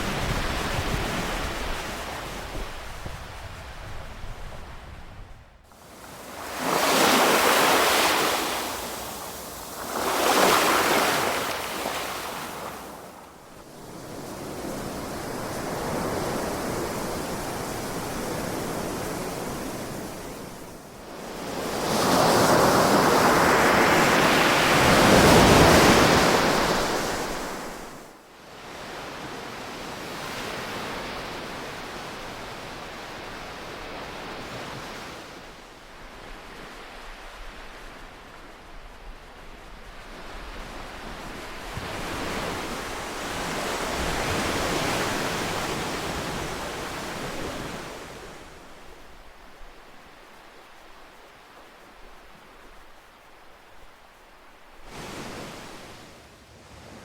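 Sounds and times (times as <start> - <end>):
ocean waves breaking: 5.7 - 20.6.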